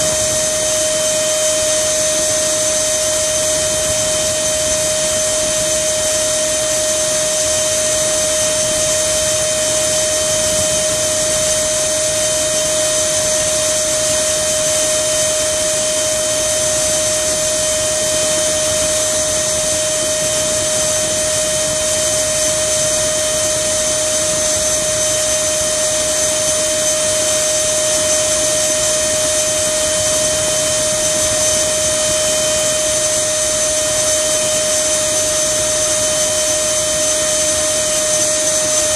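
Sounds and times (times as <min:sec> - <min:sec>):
electric ducted fan whining: 0:00.0 - 0:38.9.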